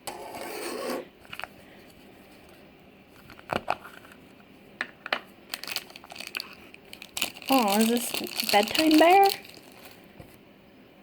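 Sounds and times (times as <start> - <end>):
plastic wrapper rustling: 5.5 - 10.1.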